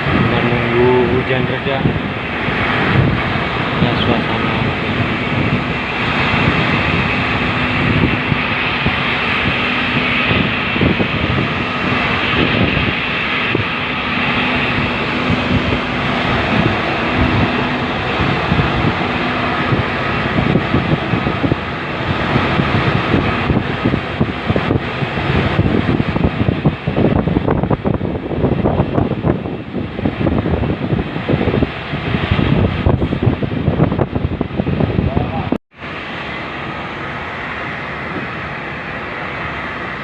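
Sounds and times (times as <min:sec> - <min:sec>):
boat engine running: 0:00.0 - 0:40.0
wind noise: 0:00.0 - 0:40.0
rain: 0:35.7 - 0:40.0.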